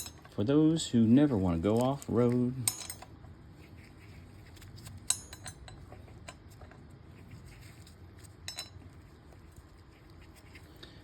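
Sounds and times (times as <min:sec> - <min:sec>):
metal tools clinking: 0:00.0 - 0:00.4, 0:02.6 - 0:03.1, 0:05.1 - 0:05.8, 0:08.5 - 0:08.8.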